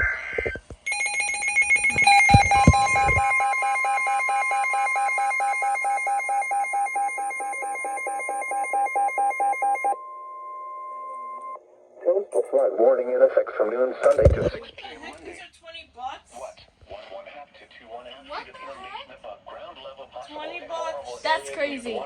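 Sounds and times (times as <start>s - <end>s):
radio alarm beeping rapidly: 0.9s - 10.0s
long steady warning tone: 0.9s - 11.7s.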